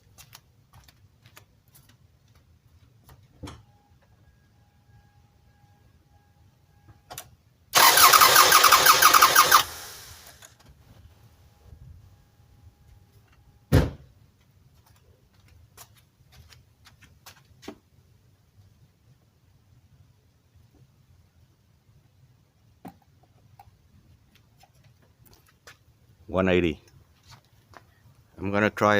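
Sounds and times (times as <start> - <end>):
car engine cranking without starting: 7.8 - 10.5
sharp thump: 13.7 - 14.1.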